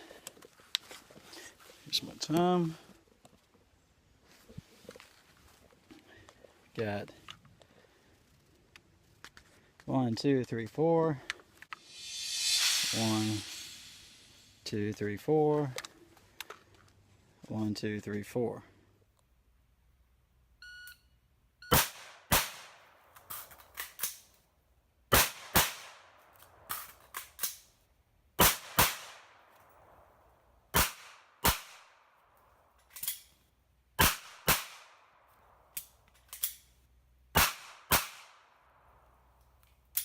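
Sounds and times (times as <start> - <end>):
pistol shots: 21.7 - 22.8, 25.1 - 26.0, 28.4 - 29.3, 30.7 - 31.9, 34.0 - 35.0, 37.4 - 38.5
rifle shots: 21.7 - 22.8, 25.1 - 26.0, 28.4 - 29.3, 34.0 - 35.0, 37.4 - 38.4
magazine change clicks and clatter: 23.2 - 24.3, 26.4 - 27.7, 35.7 - 36.7.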